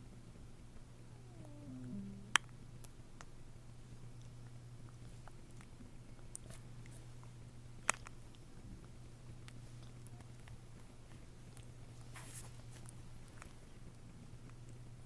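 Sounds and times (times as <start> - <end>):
steady low hum: 0.0 - 15.0
newborn baby whimpering: 1.1 - 2.3
baby mouth sounds: 1.2 - 2.5.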